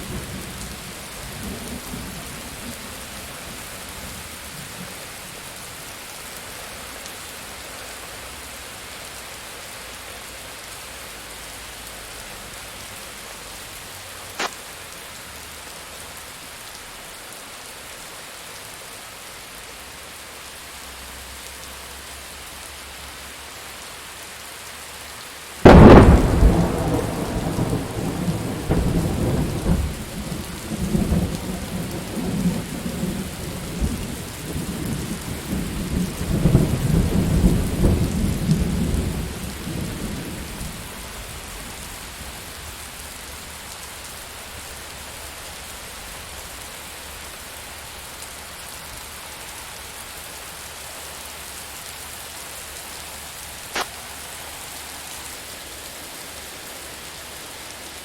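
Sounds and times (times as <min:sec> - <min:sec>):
rolling rumble of thunder: 0:00.0 - 0:05.0, 0:25.6 - 0:42.0
steady rain: 0:00.0 - 0:58.0
short sharp crack: 0:14.4 - 0:14.6, 0:53.7 - 0:54.0
thunderclap: 0:25.6 - 0:30.0.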